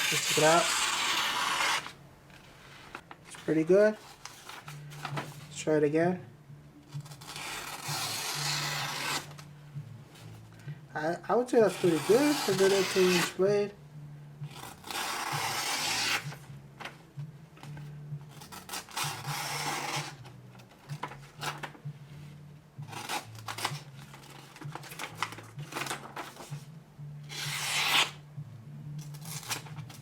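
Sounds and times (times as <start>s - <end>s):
knife slicing paper: 0.0s - 2.0s, 7.2s - 9.4s, 11.7s - 13.4s, 14.6s - 16.4s, 27.3s - 28.2s.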